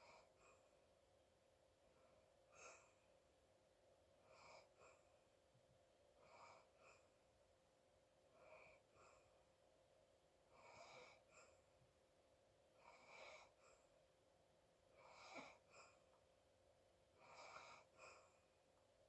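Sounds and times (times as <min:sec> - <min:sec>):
sleeping person breathing noisily: 0:17.2 - 0:18.4.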